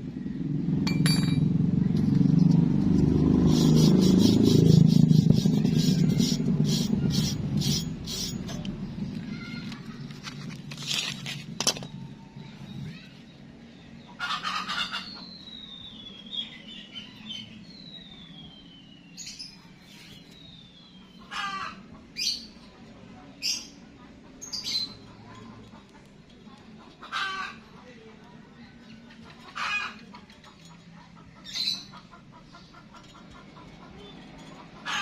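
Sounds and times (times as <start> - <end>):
bird calls: 28.7 - 35.0.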